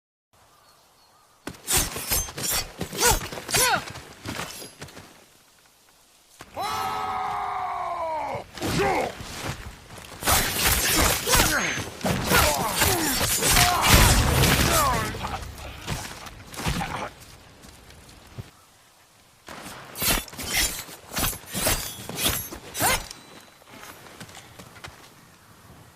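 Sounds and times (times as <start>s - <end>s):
heavy thud: 13.9s - 17.0s.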